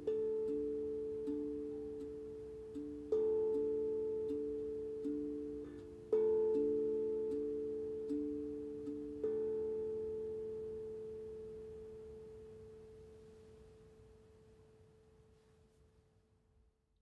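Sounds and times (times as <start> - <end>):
plucked note ringing: 0.0 - 13.3.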